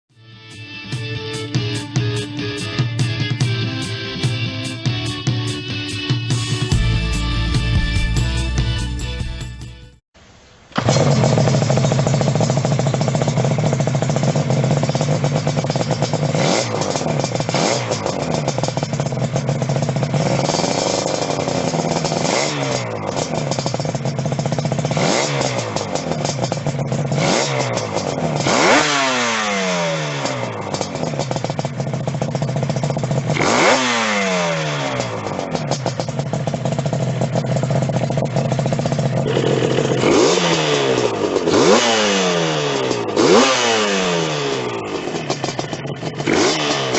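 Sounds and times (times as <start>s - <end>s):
two-stroke engine revving: 10.8s - 46.9s.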